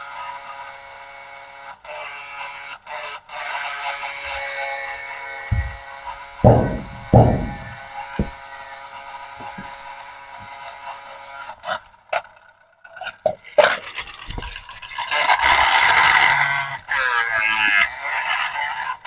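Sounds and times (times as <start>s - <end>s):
handling clicks and knocks: 5.5s - 5.8s, 6.4s - 8.4s
loud scraping and rustling: 5.5s - 8.4s.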